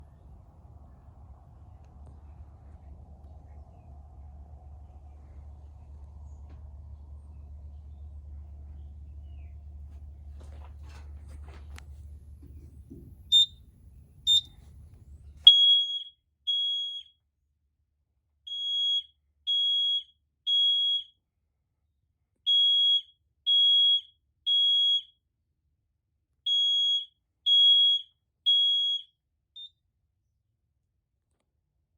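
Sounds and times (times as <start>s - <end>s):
high-pitched electronic horn beeps: 13.3s - 13.6s, 15.5s - 17.0s.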